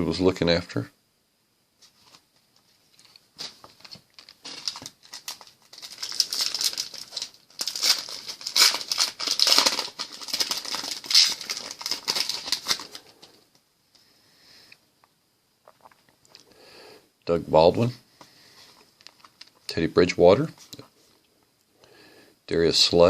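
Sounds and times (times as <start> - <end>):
foil wrapper crinkling and tearing: 3.0 - 13.4, 18.9 - 19.6.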